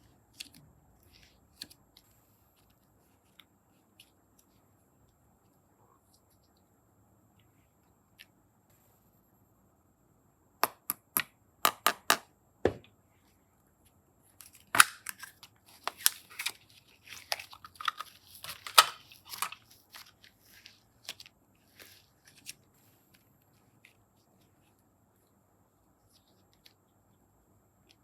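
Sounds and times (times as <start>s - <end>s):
crinkling and scraping clay: 14.3s - 24.9s.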